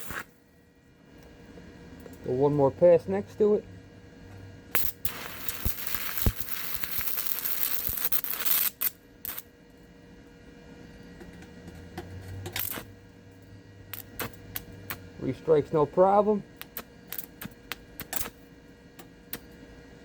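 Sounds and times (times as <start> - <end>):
short arc bursts: 0.0 - 0.4, 4.7 - 9.5, 12.5 - 13.0, 13.9 - 18.4
welding arc crackling: 0.0 - 0.4, 4.7 - 9.5, 12.4 - 13.0, 13.9 - 18.4, 19.3 - 19.5
cooling fan hum: 0.0 - 20.0.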